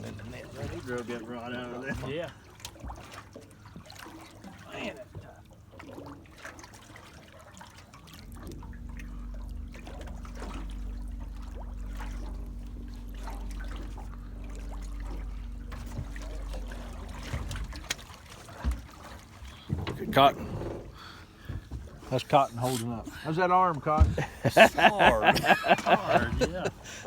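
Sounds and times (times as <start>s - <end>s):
water trickling and pouring: 0.0s - 22.7s
low motor hum: 7.7s - 27.0s.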